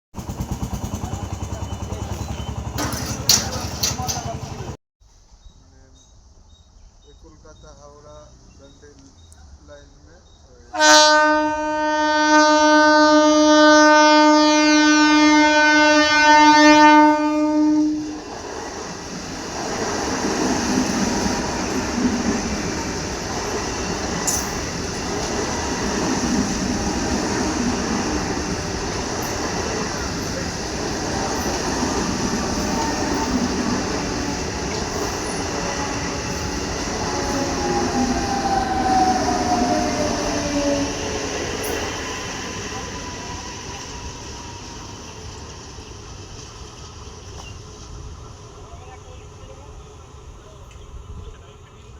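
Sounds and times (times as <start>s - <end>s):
train rumbling past: 0.1s - 4.8s, 5.5s - 51.9s
train horn: 10.7s - 18.2s, 26.1s - 41.9s.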